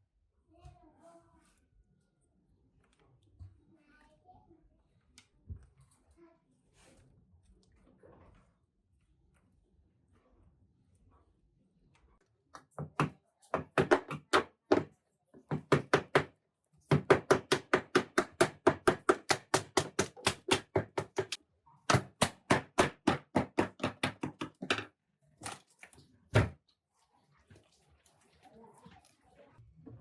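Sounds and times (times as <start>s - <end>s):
sharp hard knocks: 16.9s - 24.9s.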